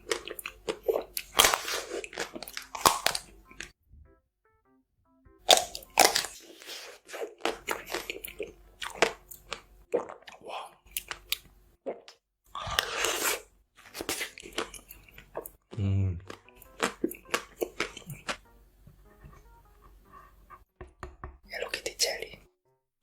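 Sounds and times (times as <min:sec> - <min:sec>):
crunchy chewing of food: 0:00.0 - 0:03.7, 0:05.5 - 0:18.4.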